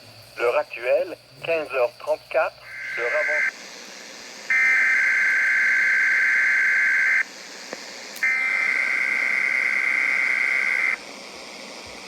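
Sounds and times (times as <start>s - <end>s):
raspy digital data bursts: 1.5s - 3.6s.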